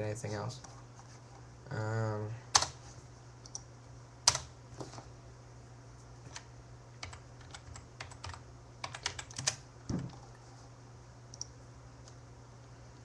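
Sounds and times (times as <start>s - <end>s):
low steady hum: 0.0s - 13.0s
computer keyboard typing: 4.3s - 4.5s, 6.3s - 9.6s.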